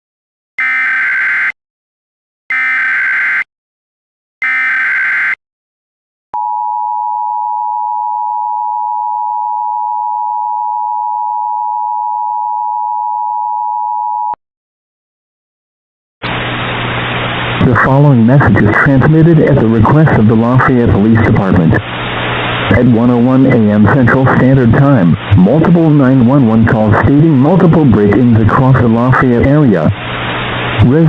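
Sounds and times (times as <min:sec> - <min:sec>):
harsh digital data tone bursts: 0:00.6 - 0:01.6, 0:02.5 - 0:03.5, 0:04.4 - 0:05.4
two-tone attention signal: 0:00.6 - 0:01.6, 0:04.4 - 0:05.4.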